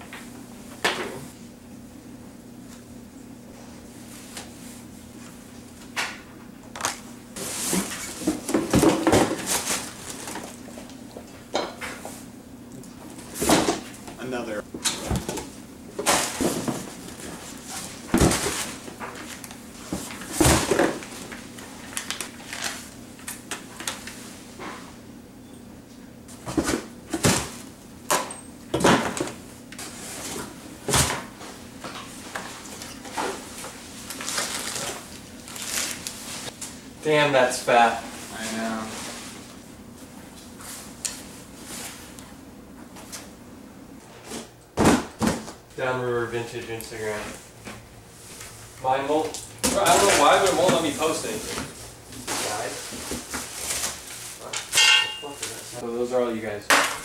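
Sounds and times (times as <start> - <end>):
objects rustling and clattering: 6.2 - 14.0, 14.8 - 25.0, 26.3 - 36.8, 37.8 - 42.2, 46.8 - 55.9
objects knocking and rustling: 6.8 - 12.0, 14.8 - 21.4.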